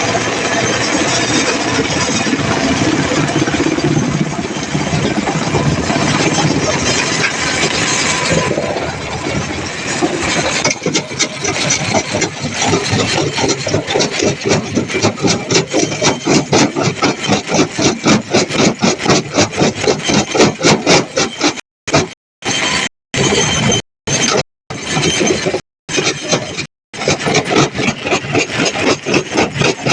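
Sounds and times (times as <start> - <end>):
heavy machinery engine running: 0.0 - 20.4.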